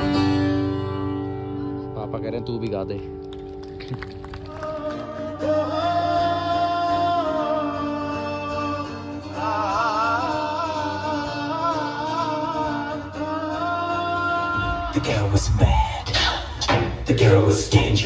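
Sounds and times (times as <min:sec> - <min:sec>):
backing music: 0:00.0 - 0:18.0
person singing: 0:04.5 - 0:18.0.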